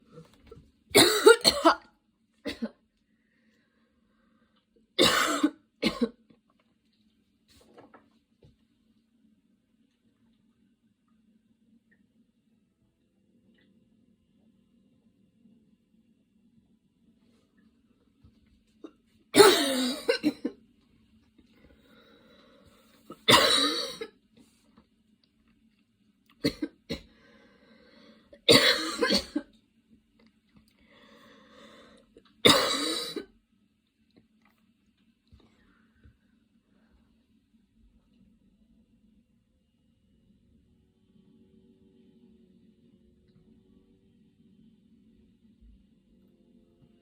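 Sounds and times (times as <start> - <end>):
person coughing: 1.0 - 1.9, 2.5 - 2.8, 5.0 - 6.2, 18.8 - 20.6, 23.1 - 24.1, 26.4 - 27.1, 28.4 - 29.5, 32.4 - 33.3
faint breath: 3.0 - 4.8, 21.5 - 23.1, 27.0 - 28.4, 30.7 - 32.2, 35.3 - 37.3.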